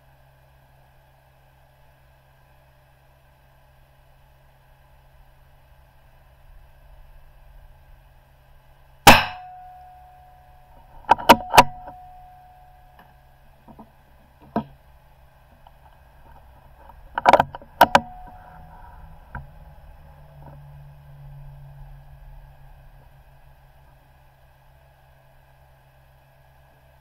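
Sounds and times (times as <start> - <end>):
rifle shot: 9.1 - 9.6.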